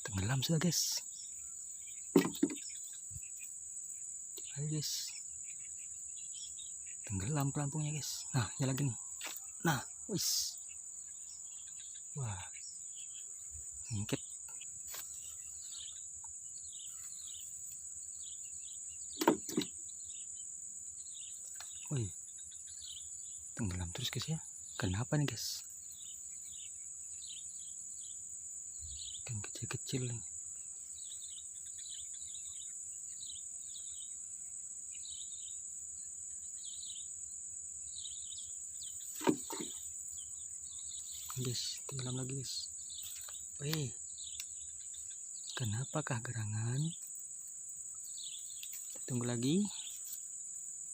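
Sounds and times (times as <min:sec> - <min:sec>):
insect drone: 0:00.0 - 0:50.9
sharp knocks: 0:02.1 - 0:02.6, 0:19.2 - 0:19.7, 0:39.2 - 0:39.8.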